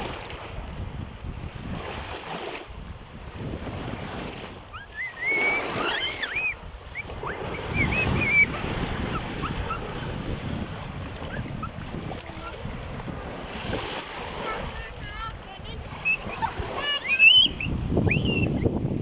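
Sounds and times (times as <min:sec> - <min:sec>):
sea waves washing on beach: 0:00.0 - 0:19.0
wind buffeting microphone: 0:00.0 - 0:19.0
high gliding calls: 0:04.8 - 0:09.9, 0:15.9 - 0:18.5.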